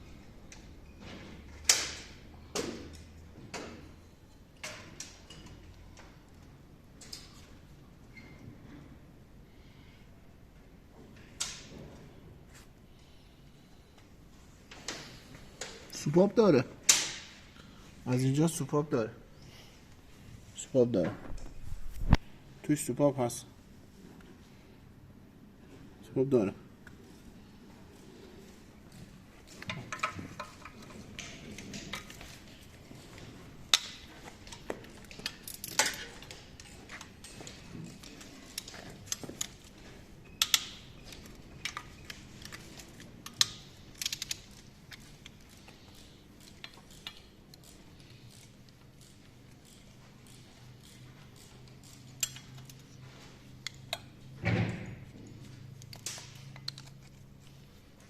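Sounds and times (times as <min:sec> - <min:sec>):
metal clinks of tools and parts: 0:28.9 - 0:54.2.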